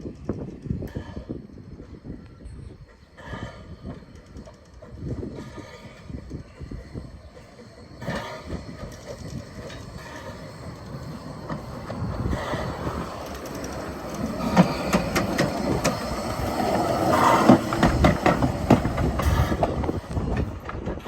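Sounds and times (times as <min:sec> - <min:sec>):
train running by: 0:00.0 - 0:21.0.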